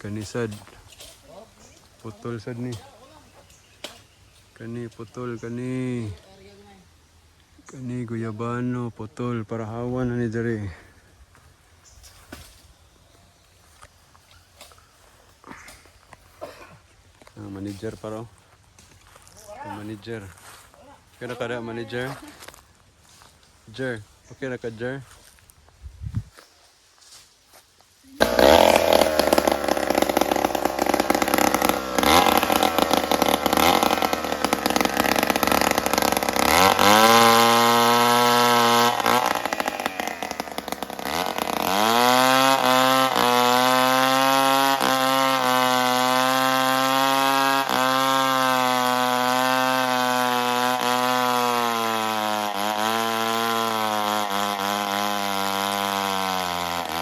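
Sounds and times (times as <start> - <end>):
chainsaw engine running: 28.2 - 57.0.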